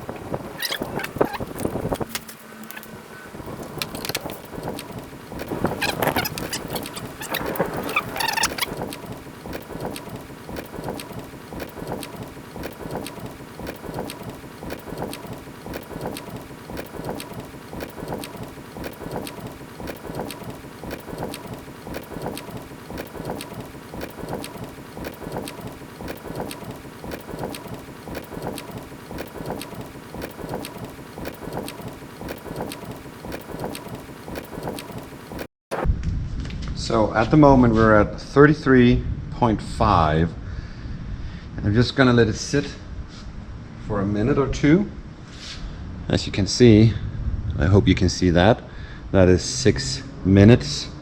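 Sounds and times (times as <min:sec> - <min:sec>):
portable air compressor running: 0:00.6 - 0:35.8.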